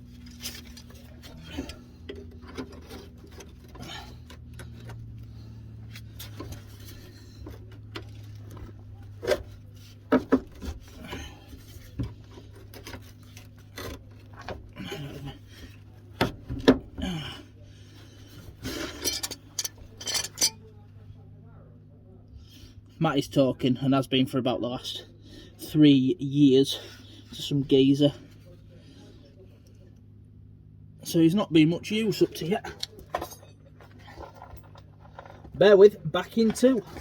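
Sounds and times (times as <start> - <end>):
steady low hum: 0.0 - 37.0
hand tools scraping metal: 18.4 - 20.6.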